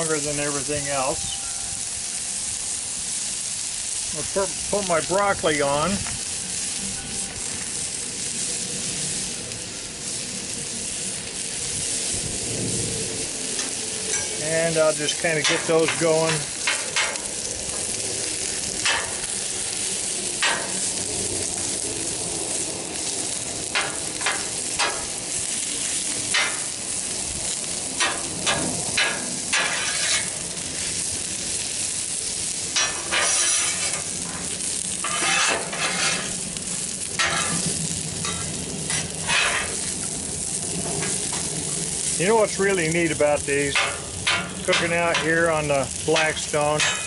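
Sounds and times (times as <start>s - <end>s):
vegetables sizzling in oil: 0.0s - 47.0s
spatula scraping griddle: 13.2s - 21.0s, 23.6s - 25.2s, 25.8s - 47.0s.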